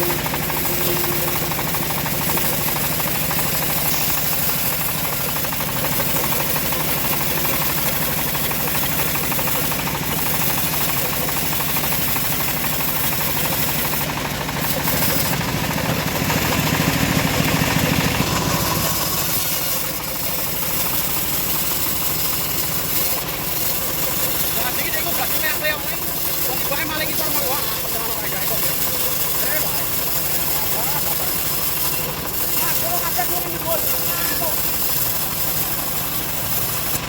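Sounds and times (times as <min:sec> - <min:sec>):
sawmill engine running: 0:00.0 - 0:37.0.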